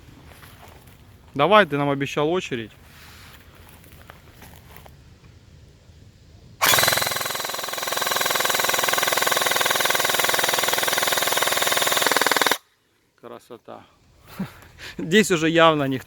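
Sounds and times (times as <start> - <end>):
airsoft gun full-auto burst: 6.6 - 12.6.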